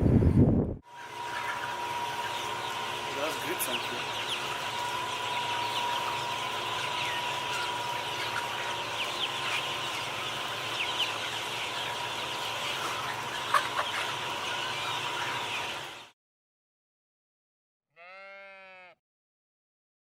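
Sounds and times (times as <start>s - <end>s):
birds chirping: 1.0s - 16.1s.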